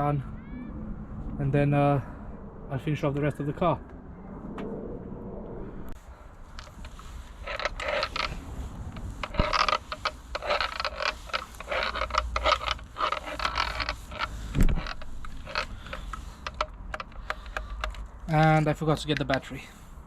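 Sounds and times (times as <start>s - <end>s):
scraping rustling and clicking: 6.5s - 19.4s.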